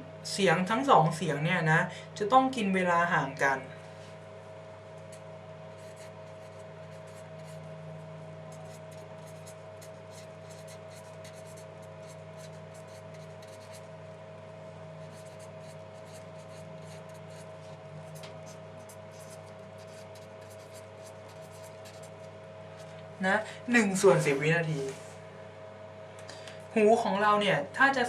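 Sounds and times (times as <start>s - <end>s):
steady electrical hum: 0.0s - 28.0s
pen scratching on paper: 5.8s - 7.7s, 8.5s - 13.9s, 15.0s - 22.2s.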